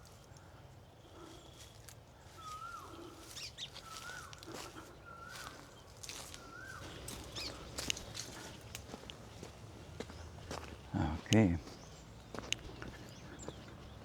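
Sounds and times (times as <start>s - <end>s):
high bird chirps: 5.1s - 14.0s
light clicks: 7.7s - 9.2s.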